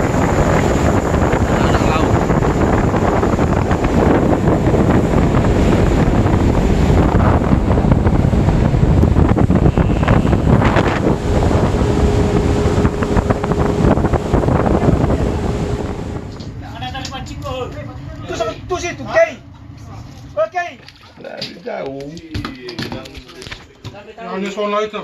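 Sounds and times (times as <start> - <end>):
wind buffeting microphone: 0.0 - 18.7
boat rushing through water: 0.0 - 21.4.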